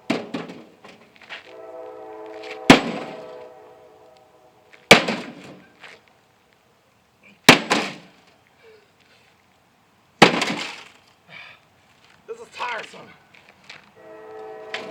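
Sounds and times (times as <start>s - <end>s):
blows on sheet-metal casing: 0.0s - 5.7s.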